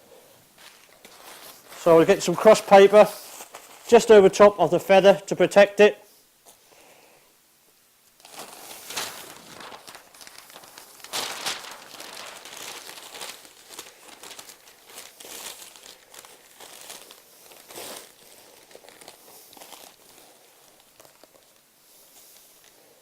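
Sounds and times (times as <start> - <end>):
paper rustling and crinkling: 0.6 - 4.2, 8.2 - 22.8.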